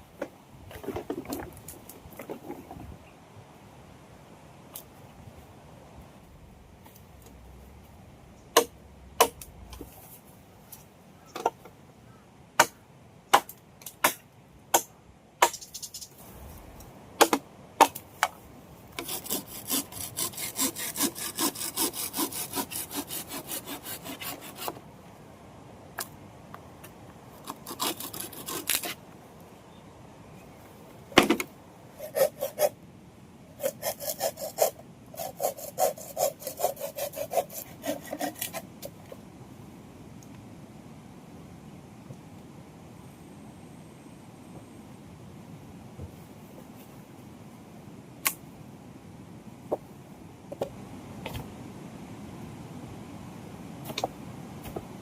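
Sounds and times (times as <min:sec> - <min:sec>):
hand saw cutting wood: 0:19.0 - 0:24.8, 0:27.4 - 0:29.0, 0:32.0 - 0:32.8, 0:33.6 - 0:38.6.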